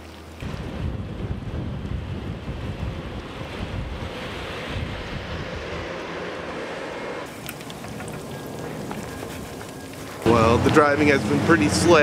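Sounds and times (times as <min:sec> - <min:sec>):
storm wind buffeting microphone: 0:00.4 - 0:06.6.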